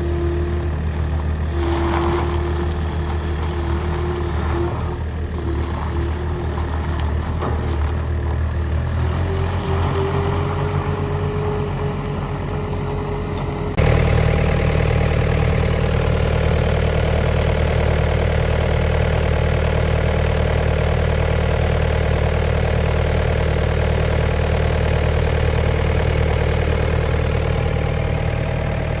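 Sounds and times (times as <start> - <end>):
diesel engine idling: 0.0 - 29.0.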